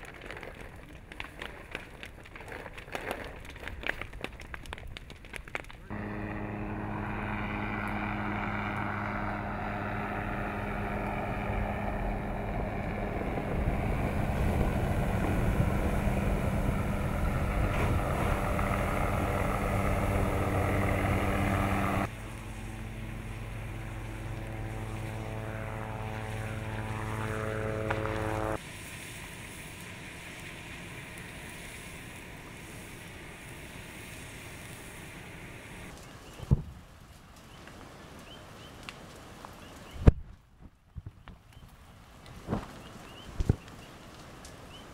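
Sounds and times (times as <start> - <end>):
aircraft engine drone: 5.9 - 35.9.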